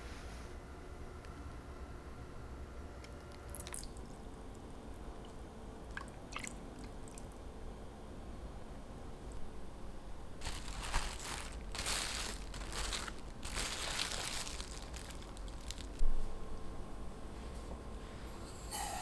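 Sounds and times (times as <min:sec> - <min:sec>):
crinkling rustling handling noise: 0:10.4 - 0:16.0.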